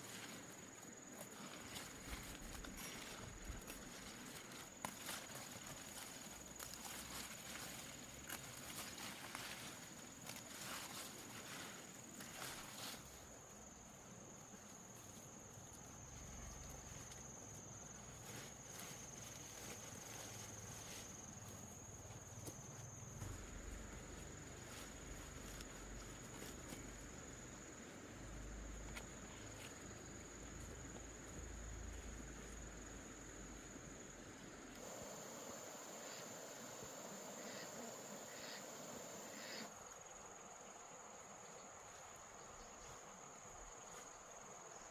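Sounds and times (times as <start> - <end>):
high-pitched insect trill: 34.8 - 44.9.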